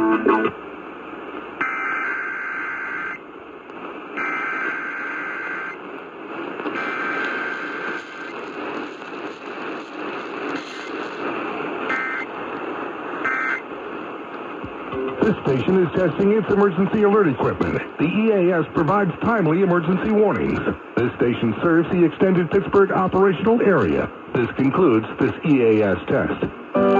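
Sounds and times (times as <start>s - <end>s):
static hiss: 0.0s - 26.9s
buzzy warbling data tones: 13.2s - 13.6s.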